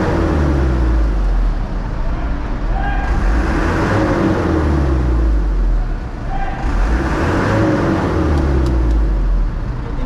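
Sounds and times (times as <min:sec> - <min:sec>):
diesel truck engine rumbling: 0:00.0 - 0:10.0.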